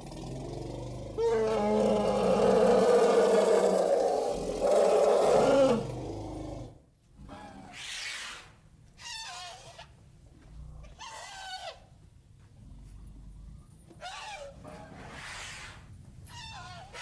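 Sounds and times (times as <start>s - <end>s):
elephant calling: 14.0s - 17.0s.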